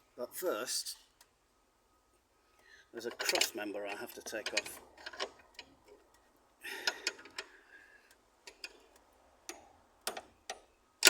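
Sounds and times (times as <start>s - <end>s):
spanner clicking on metal bolts: 3.1s - 10.7s.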